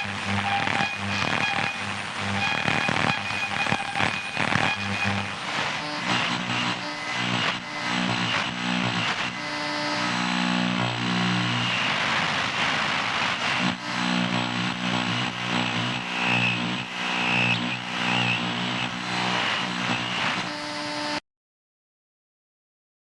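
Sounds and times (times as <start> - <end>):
radio interference buzz: 0.0 - 21.2
static hiss: 0.0 - 21.2.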